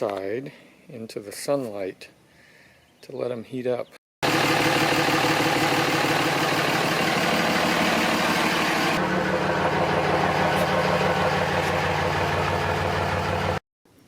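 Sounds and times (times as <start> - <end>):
engine-like mechanical hum: 4.2 - 14.0.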